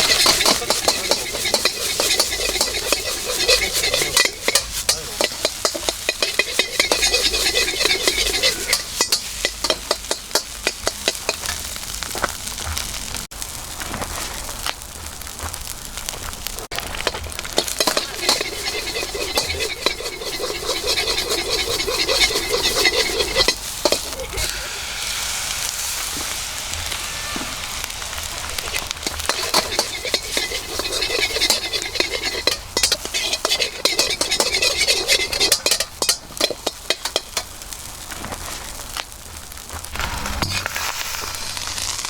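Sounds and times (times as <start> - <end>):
metal utensil scraping a wok: 0.0 - 12.0, 16.7 - 38.8, 39.9 - 42.0
utensil clanking against wok: 0.0 - 12.0, 16.7 - 38.4
rice sizzling in a wok: 0.0 - 42.0.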